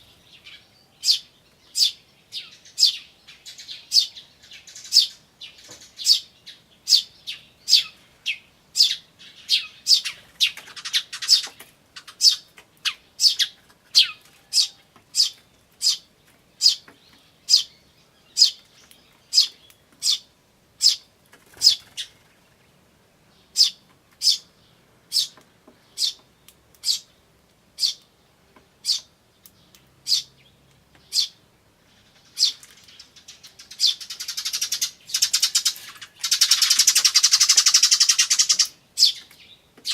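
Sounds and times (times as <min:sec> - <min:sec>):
sparrows chirping: 0:00.0 - 0:39.9
fast chattering bird call: 0:08.8 - 0:16.0, 0:32.1 - 0:39.2.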